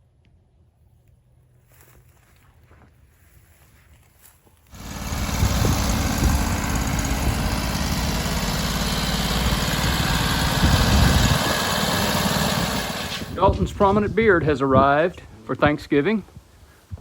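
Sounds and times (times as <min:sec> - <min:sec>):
engine running: 0:04.7 - 0:13.8.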